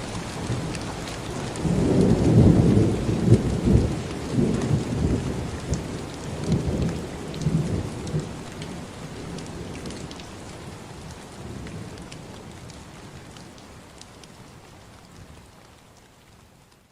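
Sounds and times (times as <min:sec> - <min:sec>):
thunder rumbling: 0:00.0 - 0:10.0
rain falling: 0:00.0 - 0:16.9.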